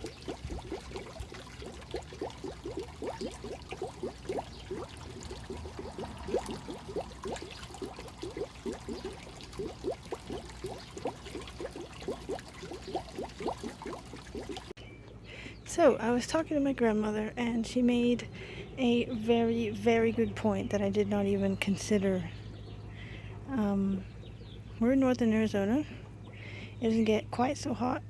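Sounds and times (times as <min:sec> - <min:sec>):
water trickling and splashing: 0:00.0 - 0:14.8.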